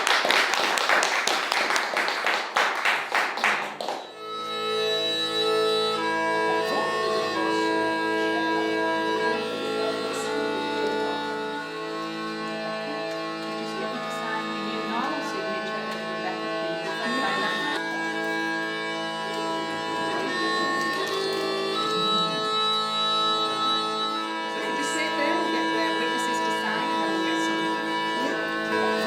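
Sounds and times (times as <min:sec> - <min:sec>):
hand clapping: 0:00.0 - 0:05.0
instrumental music with held notes: 0:00.0 - 0:29.0.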